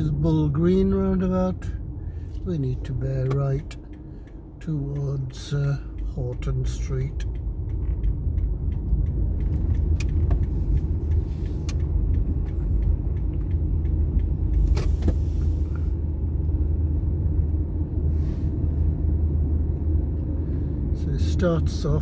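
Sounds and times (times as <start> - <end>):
car engine and road rumble: 0.0 - 22.0
small clicks and rattles: 3.0 - 14.9.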